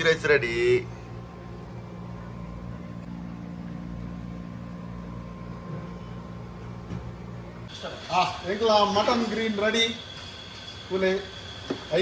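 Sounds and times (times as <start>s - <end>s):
machine hum with thin whine: 0.0s - 12.0s.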